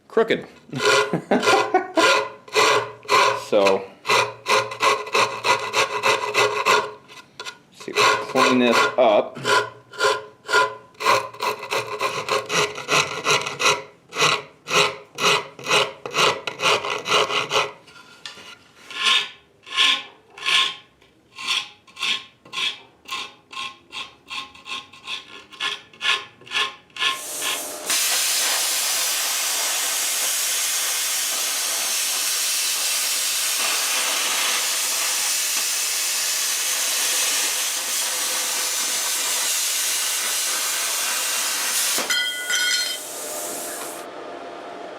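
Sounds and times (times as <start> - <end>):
hand file rasping wood: 0.6 - 27.7
steady hiss: 27.2 - 42.1.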